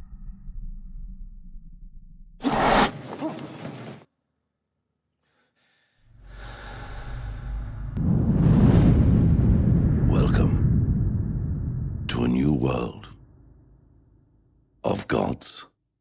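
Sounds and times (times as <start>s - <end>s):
sharp gasping breath: 5.2s - 7.4s
rumbling whoosh: 7.0s - 14.2s.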